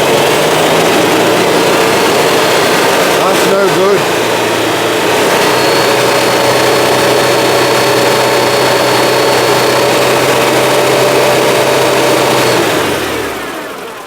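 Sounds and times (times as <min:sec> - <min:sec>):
car engine idling: 0:00.0 - 0:05.5, 0:06.1 - 0:14.0
thin high whine: 0:05.3 - 0:07.6.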